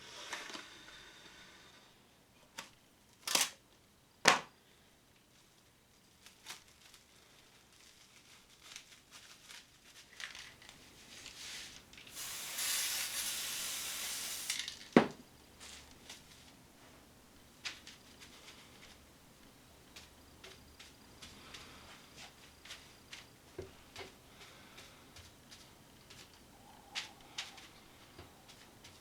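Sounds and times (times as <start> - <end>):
steady hissing rustle: 4.7 - 29.0.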